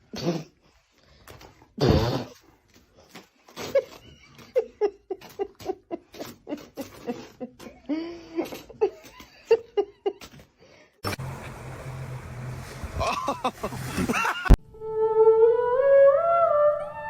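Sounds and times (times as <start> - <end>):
person laughing: 12.9 - 14.6
music: 14.6 - 17.0.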